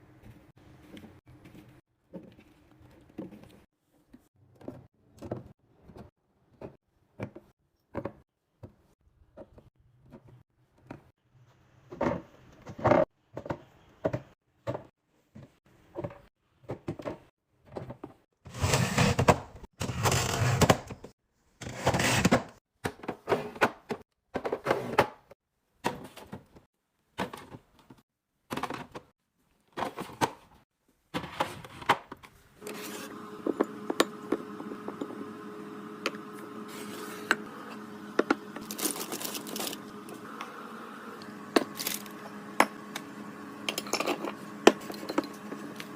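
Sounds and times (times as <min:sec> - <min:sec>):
containers knocking and clinking: 0:33.4 - 0:35.2, 0:38.1 - 0:39.9, 0:41.5 - 0:45.9
packages rustling: 0:38.6 - 0:40.2, 0:41.7 - 0:42.2.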